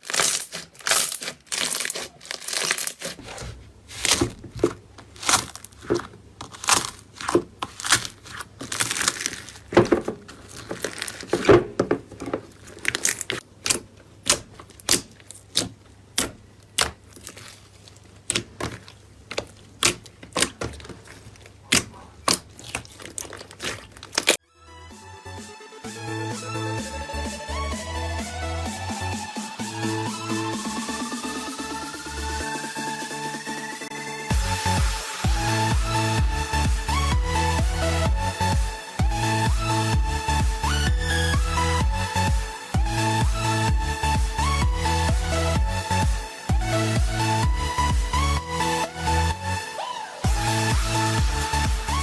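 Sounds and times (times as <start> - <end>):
slime crackling and popping: 0.0 - 11.7, 12.4 - 24.4
electronic music: 24.4 - 52.0.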